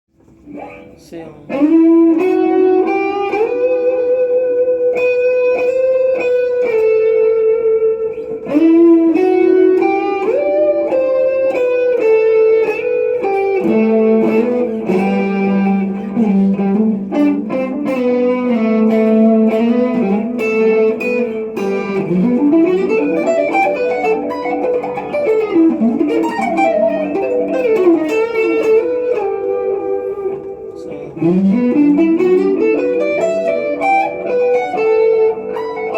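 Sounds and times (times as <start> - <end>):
electric guitar lead melody: 0.1 - 35.9.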